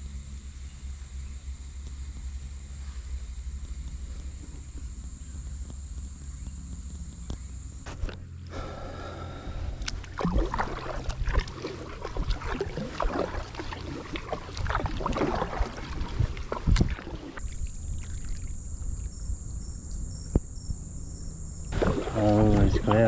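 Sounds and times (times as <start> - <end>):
paddle splashing water: 7.9 - 19.1, 21.7 - 23.0.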